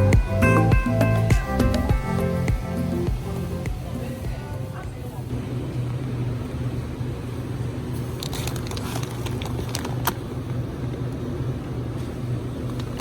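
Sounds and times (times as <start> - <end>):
steady low hum: 0.0 - 13.0
light clicks and clatter: 8.0 - 11.1.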